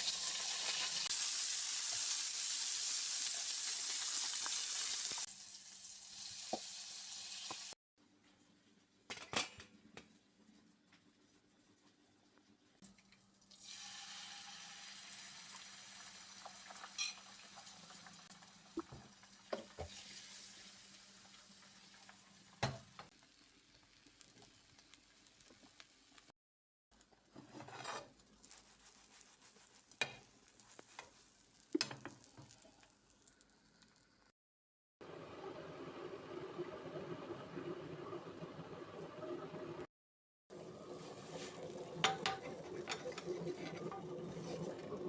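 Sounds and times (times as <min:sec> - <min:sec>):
food sizzling in a pan: 0:00.0 - 0:07.8, 0:13.5 - 0:26.4, 0:27.0 - 0:34.3, 0:40.5 - 0:45.0
stirring and scraping: 0:27.1 - 0:33.5, 0:41.0 - 0:45.0.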